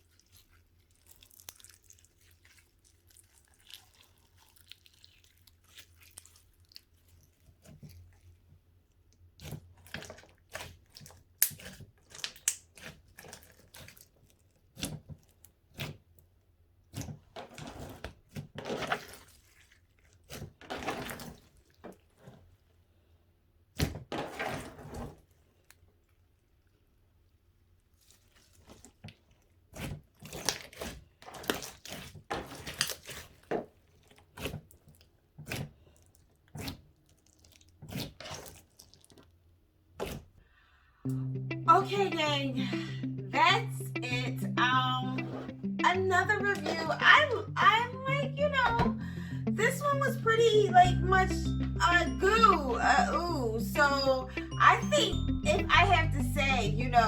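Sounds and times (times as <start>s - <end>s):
hands squishing slime: 0.0s - 8.2s, 9.4s - 16.1s, 28.0s - 39.4s
wet sticky crackles and pops: 0.9s - 2.4s, 9.9s - 14.9s.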